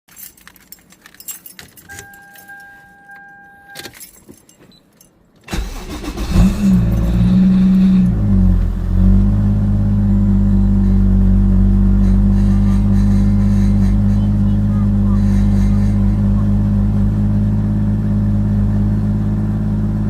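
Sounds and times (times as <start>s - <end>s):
keys jangling: 0.1s - 5.6s
electronic warning tone: 1.9s - 3.9s
car engine starting and idling: 5.4s - 20.0s.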